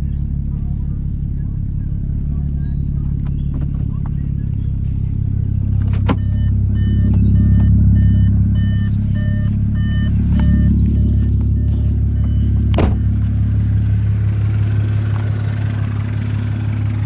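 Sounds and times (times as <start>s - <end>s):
car engine droning: 0.0s - 17.0s
high beeping chime: 6.2s - 13.2s.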